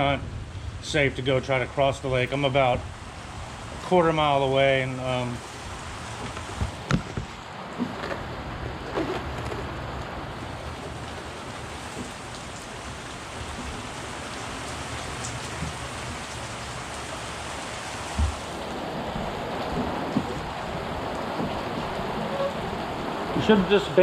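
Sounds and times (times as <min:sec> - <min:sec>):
heavy rain hissing: 0:00.0 - 0:24.0
dull thumps: 0:18.1 - 0:20.6.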